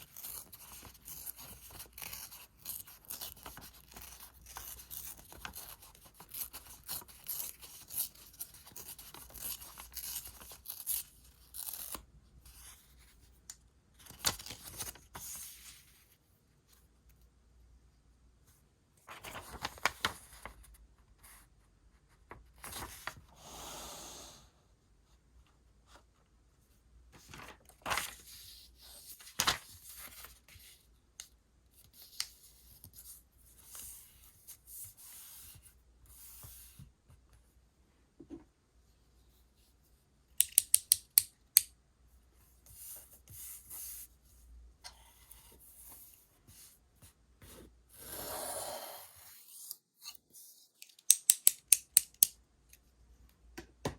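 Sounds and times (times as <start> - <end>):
paper rustling and tearing: 27.2 - 28.5.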